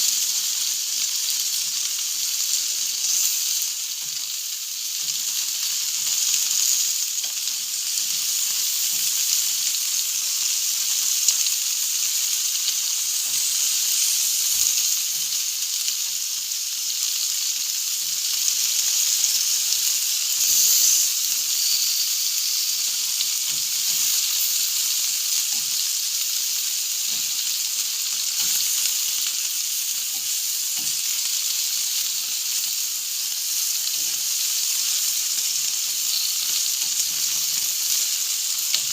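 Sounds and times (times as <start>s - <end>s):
food sizzling on a grill: 0.0s - 38.9s.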